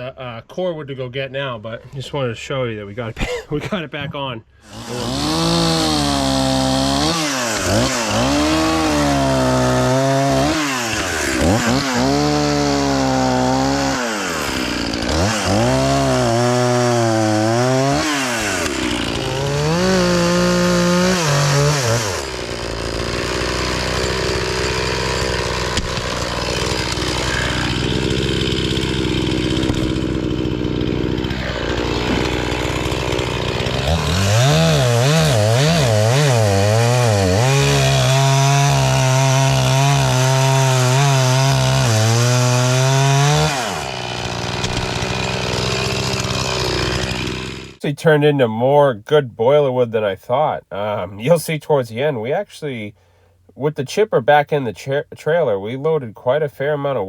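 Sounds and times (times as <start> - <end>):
chainsaw cutting wood: 4.6 - 47.8.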